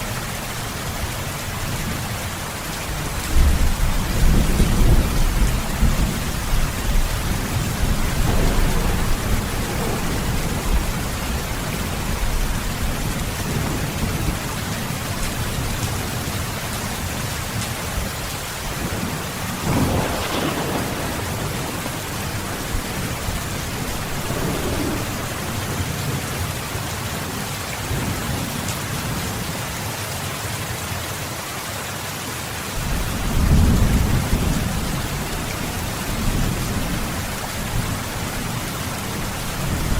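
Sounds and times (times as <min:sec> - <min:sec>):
steady rain: 0:00.0 - 0:39.9
rolling thunder: 0:03.2 - 0:16.3, 0:17.9 - 0:26.6, 0:32.8 - 0:39.9
sharp thunder crack: 0:04.3 - 0:12.2, 0:19.5 - 0:25.8.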